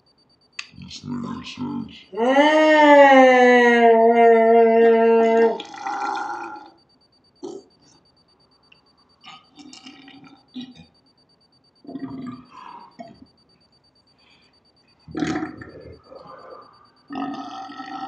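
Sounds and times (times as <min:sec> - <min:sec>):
man burping: 0:05.6 - 0:06.7, 0:11.9 - 0:13.2, 0:15.1 - 0:16.3, 0:17.1 - 0:18.0.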